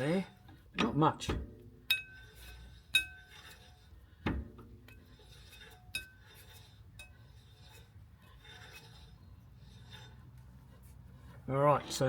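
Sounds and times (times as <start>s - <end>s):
faint metal rubbing: 0.0s - 12.0s.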